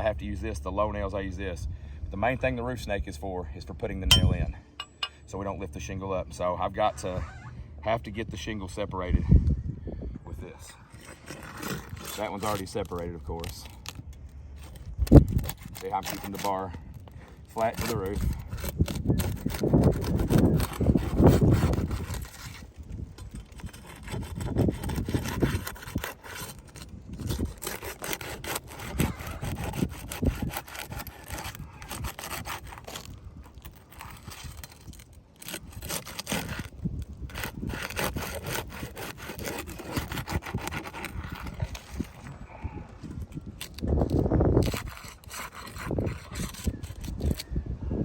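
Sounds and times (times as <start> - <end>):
metal bar scraping shingles: 10.6 - 14.0, 14.6 - 42.3, 43.6 - 47.4.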